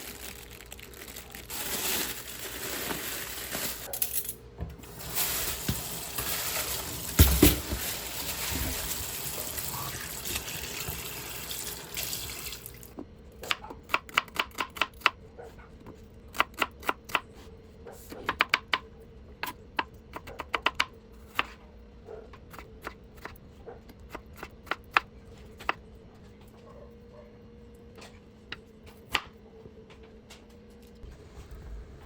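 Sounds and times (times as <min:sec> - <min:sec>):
water running from tap: 0:04.9 - 0:12.9.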